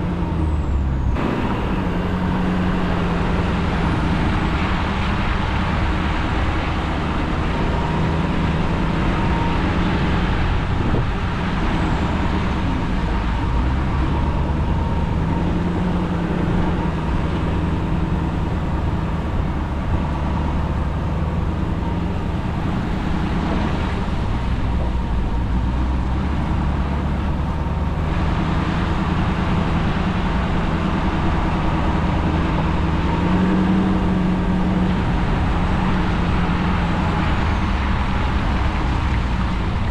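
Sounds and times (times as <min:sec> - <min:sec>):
road noise: 0:00.0 - 0:39.9
truck engine: 0:00.0 - 0:39.9.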